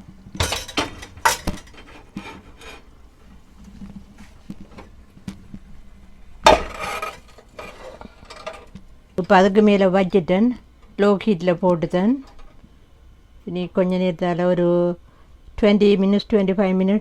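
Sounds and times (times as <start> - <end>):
metal cookware clanking: 0.3 - 2.8, 6.5 - 8.7.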